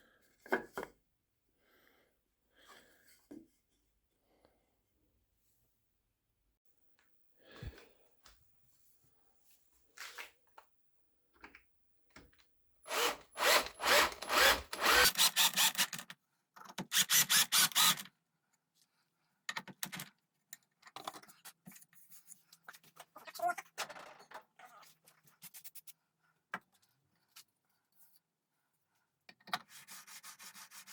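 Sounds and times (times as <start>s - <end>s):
power drill working wood: 12.9s - 16.0s, 16.9s - 18.0s.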